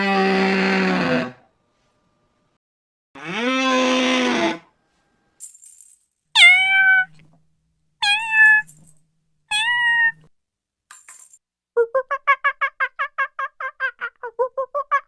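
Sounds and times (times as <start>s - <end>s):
animal call: 0.0s - 1.5s
short high cries: 6.4s - 7.2s, 8.0s - 8.8s, 9.5s - 10.2s.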